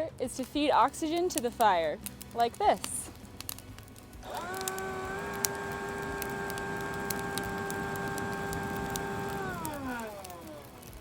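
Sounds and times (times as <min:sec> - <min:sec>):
fire crackling and popping: 0:00.0 - 0:11.0
leaf blower whining: 0:04.2 - 0:11.0.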